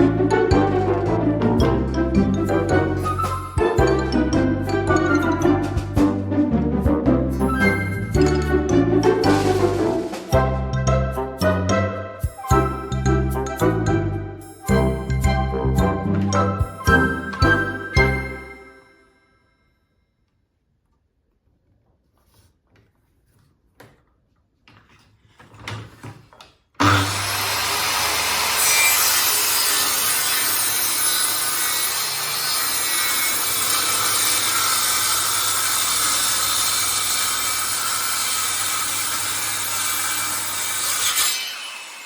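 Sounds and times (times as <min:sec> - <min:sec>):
power tool cutting wood: 0:00.0 - 0:05.4, 0:07.4 - 0:10.4, 0:26.8 - 0:42.0.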